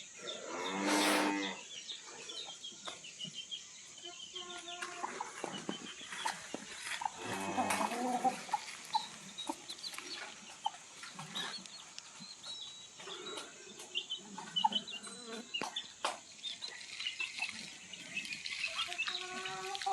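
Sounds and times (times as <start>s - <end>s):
chickens clucking and calling: 0.1s - 19.9s.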